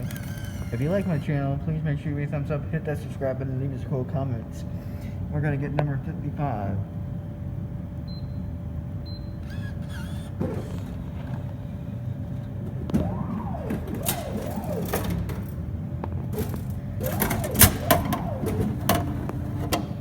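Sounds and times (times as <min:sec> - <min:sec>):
rising and falling mechanism whine: 0:00.0 - 0:01.5, 0:09.4 - 0:20.0
vending machine beeps: 0:00.0 - 0:01.5, 0:08.0 - 0:20.0
steady machine hum: 0:00.0 - 0:20.0.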